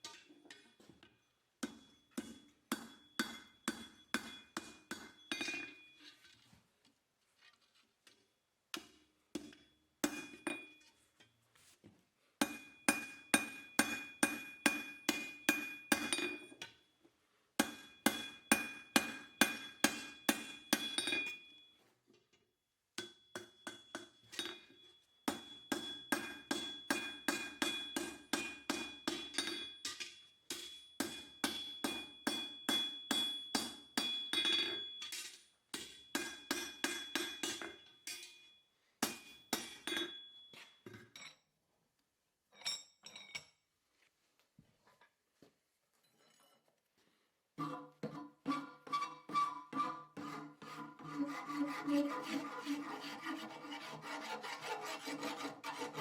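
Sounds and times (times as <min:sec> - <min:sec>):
hammer striking steel on anvil: 0:01.6 - 0:05.9, 0:08.8 - 0:10.8, 0:12.4 - 0:16.6, 0:17.6 - 0:21.6, 0:23.0 - 0:40.7.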